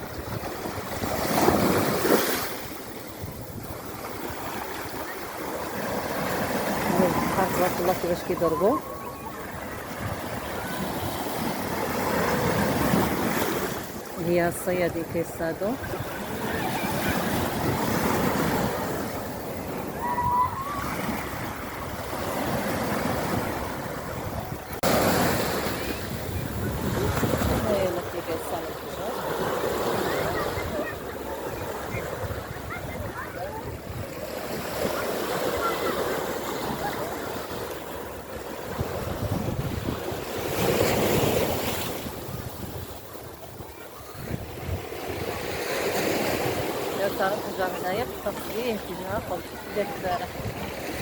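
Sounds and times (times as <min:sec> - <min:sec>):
waves breaking on shore: 0:00.0 - 0:51.0
thin whistle-like tone: 0:08.3 - 0:09.5.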